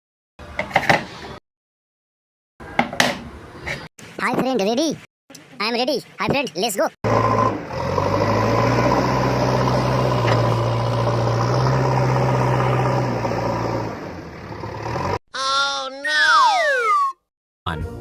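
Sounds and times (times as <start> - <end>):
vehicle engine humming: 6.4 - 15.2.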